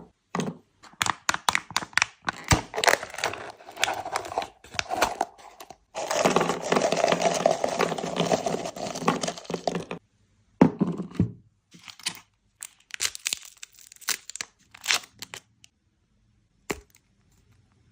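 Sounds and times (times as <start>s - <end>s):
wrapper tearing and crinkling: 2.6s - 5.2s, 6.0s - 10.0s, 11.9s - 15.4s.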